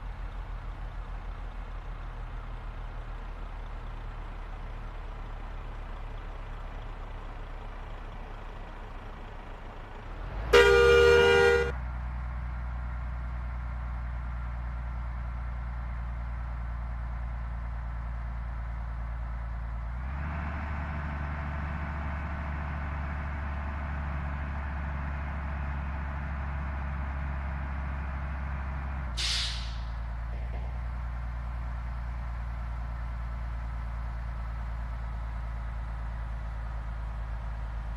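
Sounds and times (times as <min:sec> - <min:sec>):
bus engine humming: 0:00.0 - 0:37.9
road noise: 0:00.0 - 0:37.9
burst of hiss: 0:29.2 - 0:29.9.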